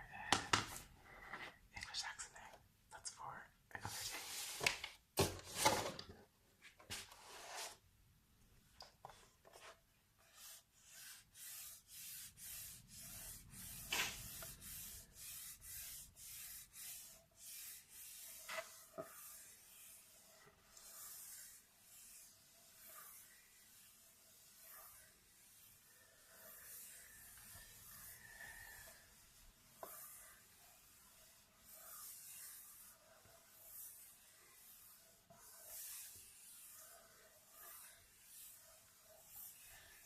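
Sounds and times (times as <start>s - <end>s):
paper being rubbed: 9.5s - 40.0s.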